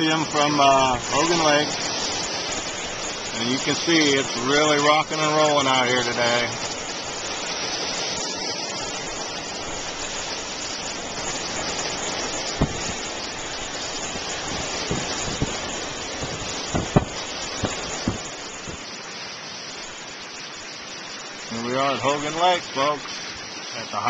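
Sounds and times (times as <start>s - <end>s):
strong storm wind: 0.0s - 23.9s
waves breaking: 0.0s - 24.0s
sharp thumps: 12.3s - 18.8s.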